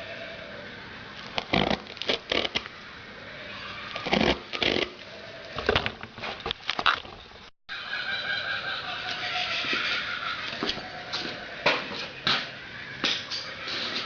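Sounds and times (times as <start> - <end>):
rubber squeaking and scraping: 1.2 - 2.7, 3.4 - 7.2.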